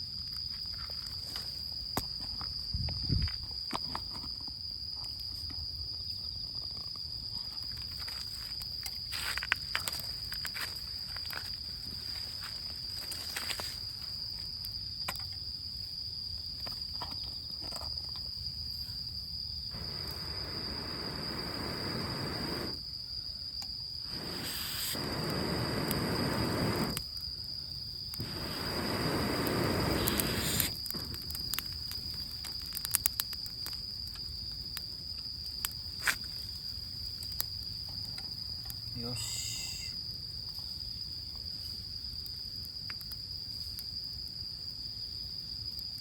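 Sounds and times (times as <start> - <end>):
insects chirring: 0.0 - 46.0
sharp crackles: 19.7 - 22.8, 24.0 - 27.1, 28.1 - 37.6.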